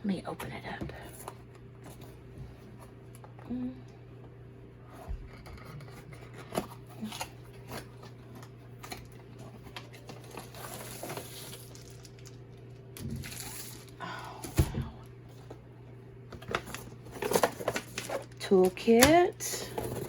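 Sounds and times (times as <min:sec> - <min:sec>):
steady low hum: 0:00.0 - 0:20.0
packaging rustling and crinkling: 0:05.8 - 0:14.0, 0:16.4 - 0:20.0.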